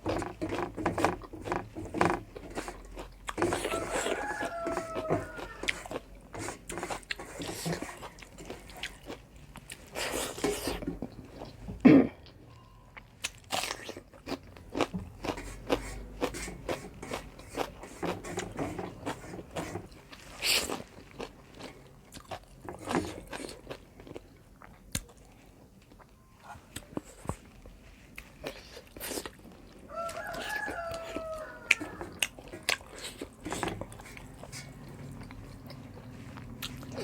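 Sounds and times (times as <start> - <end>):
person chewing and crunching food: 0.0 - 37.0.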